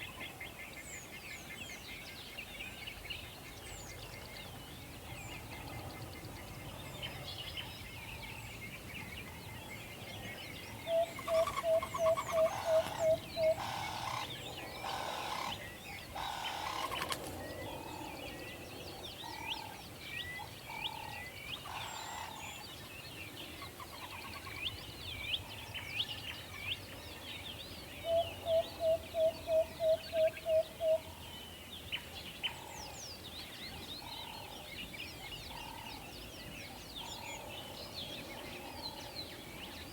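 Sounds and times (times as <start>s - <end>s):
night birds chirping: 0.0s - 39.9s
owl hooting: 10.9s - 15.6s.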